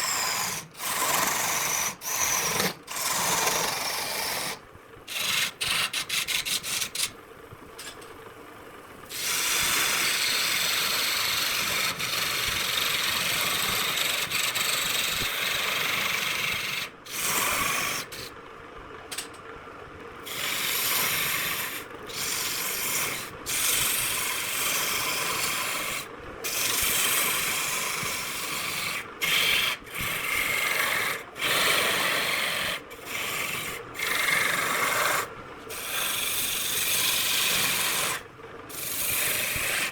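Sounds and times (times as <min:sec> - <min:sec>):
sanding wood rasp: 0:02.1 - 0:07.1.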